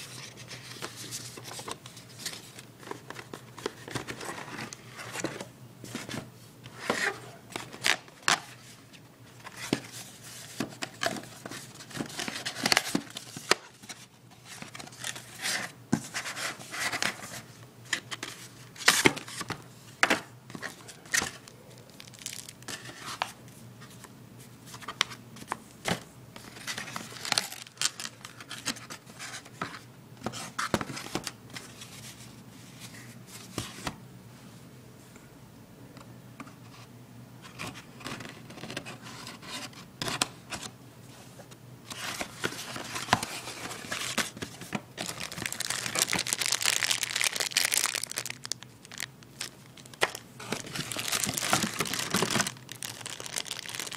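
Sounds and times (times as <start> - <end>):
packaging tearing and crinkling: 21.0 - 23.0, 26.6 - 28.8, 42.4 - 53.9.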